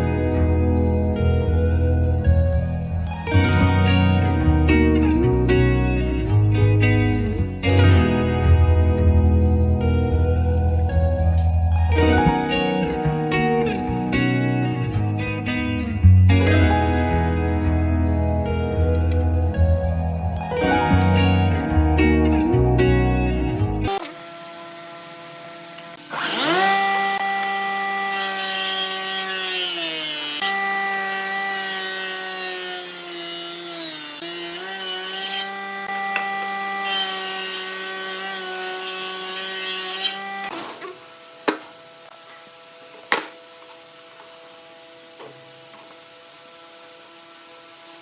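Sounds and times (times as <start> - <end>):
power tool cutting wood: 23.8 - 48.0
sharp knocks: 43.1 - 43.4.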